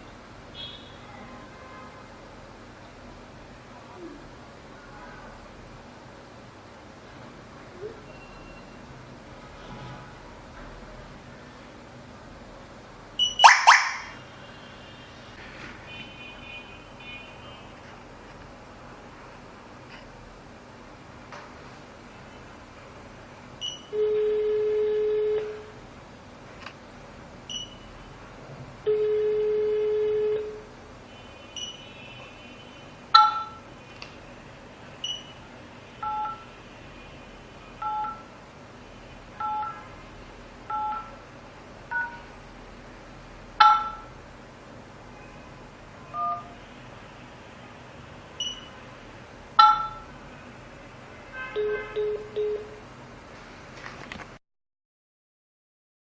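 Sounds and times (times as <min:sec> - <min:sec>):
touch-tone key tones: 0:13.2 - 0:14.1, 0:27.5 - 0:27.8, 0:31.6 - 0:31.8, 0:35.0 - 0:35.4, 0:48.4 - 0:48.7, 0:51.6 - 0:52.8
short high beeps: 0:13.2 - 0:14.2, 0:31.6 - 0:31.9, 0:48.4 - 0:48.7, 0:51.6 - 0:52.8
telephone ringing tone: 0:23.9 - 0:25.7, 0:28.9 - 0:30.7, 0:51.6 - 0:52.8.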